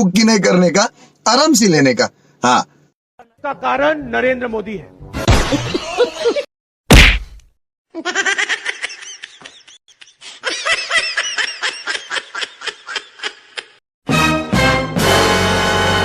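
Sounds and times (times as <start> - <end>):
laughter sound effect: 5.2 - 6.5, 8.0 - 13.8.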